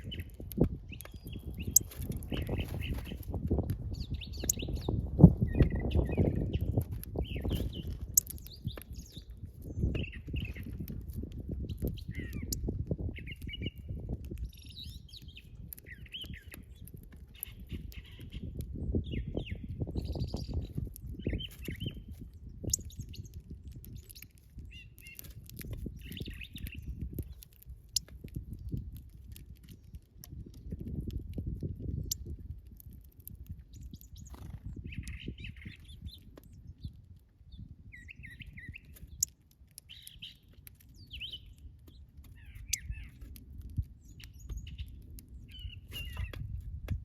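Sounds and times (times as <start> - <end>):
songbirds chirping: 0.0 - 46.6.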